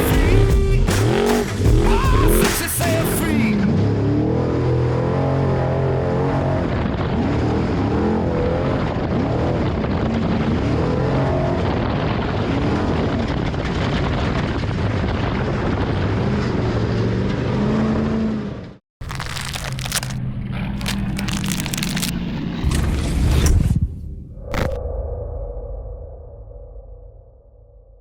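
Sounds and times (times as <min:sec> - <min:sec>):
race truck engine revving: 0:00.0 - 0:11.7.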